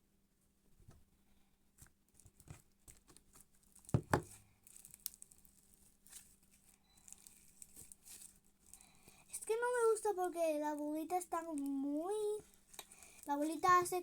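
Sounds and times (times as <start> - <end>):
slime crackling and popping: 4.6 - 6.3.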